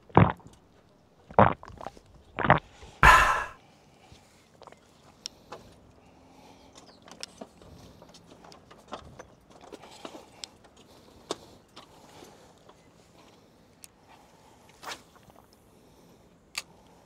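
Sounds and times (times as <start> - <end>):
footsteps walking: 2.4 - 3.6.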